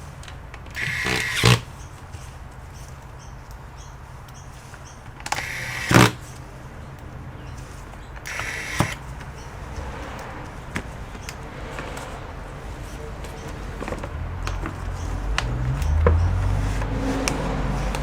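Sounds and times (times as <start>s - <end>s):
electric screwdriver whirring: 0.7s - 1.7s, 5.3s - 6.3s, 8.2s - 9.0s
screw seating click: 8.2s - 9.0s.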